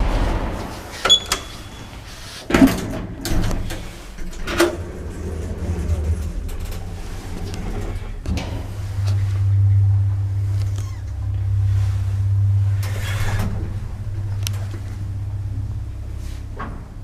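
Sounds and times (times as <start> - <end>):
lift car humming: 0.0 - 17.0
lift doors and buttons clicking: 0.9 - 17.0
short high beep: 1.0 - 2.0.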